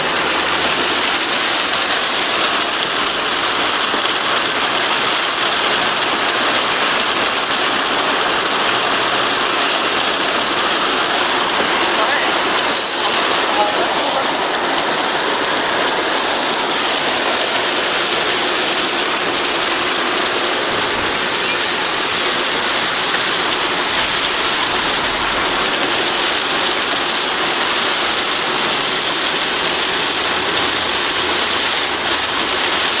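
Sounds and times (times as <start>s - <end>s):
heavy rain: 0.0s - 33.0s
drops ticking: 3.4s - 28.6s.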